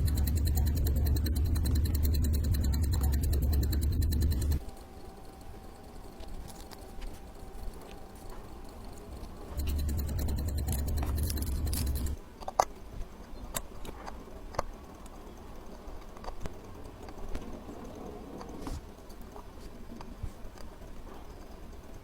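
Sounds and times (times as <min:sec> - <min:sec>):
small metal tools clicking: 0:00.0 - 0:04.8, 0:07.7 - 0:12.6
small motorised tool whirring: 0:00.0 - 0:12.2.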